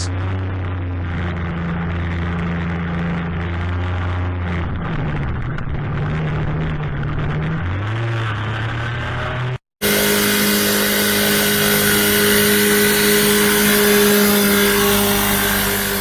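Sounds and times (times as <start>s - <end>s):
ultralight aircraft engine: 0.0s - 16.0s.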